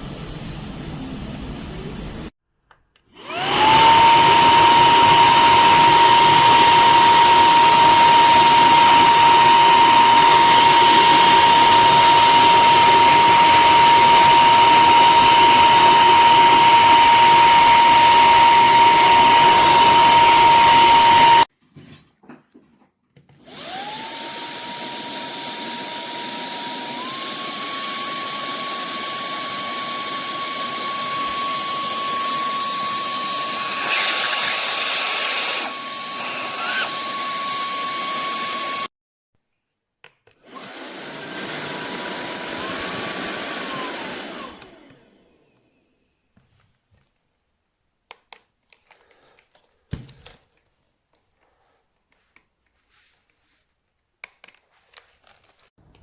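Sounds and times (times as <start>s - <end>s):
handheld vacuum motor whine: 3.2s - 21.5s, 23.4s - 38.9s, 40.4s - 46.0s.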